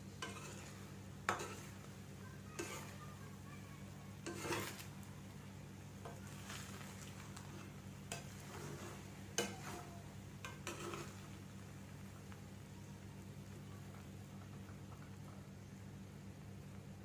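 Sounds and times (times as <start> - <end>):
spoon scraping cooking pot: 0.2 - 1.9, 2.6 - 3.0, 4.2 - 4.9, 6.0 - 11.4.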